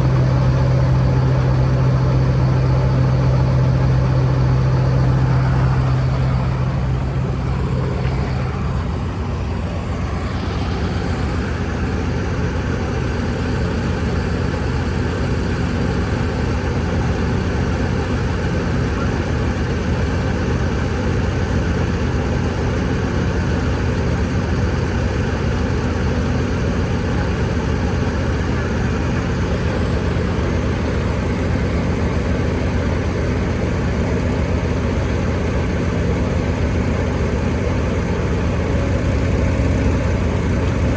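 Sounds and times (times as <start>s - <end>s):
low hum: 0.0s - 12.6s
heavy diesel engine running: 0.0s - 40.9s.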